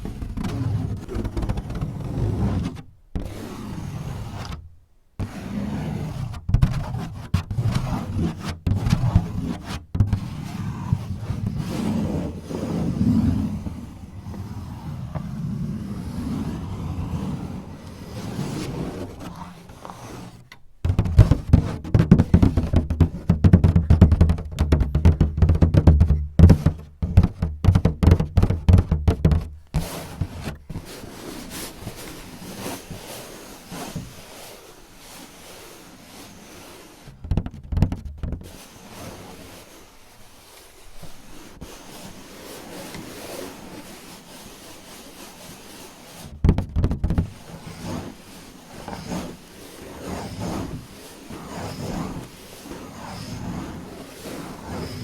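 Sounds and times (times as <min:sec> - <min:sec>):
soft scratching: 0:00.0 - 0:55.0
fingers tapping on hollow surface: 0:20.8 - 0:29.8, 0:37.2 - 0:38.5, 0:46.4 - 0:47.3.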